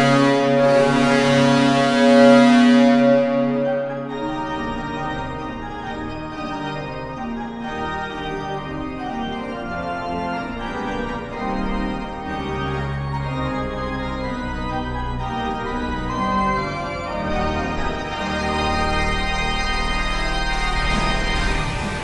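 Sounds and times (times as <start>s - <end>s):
organ music: 0.0s - 22.0s.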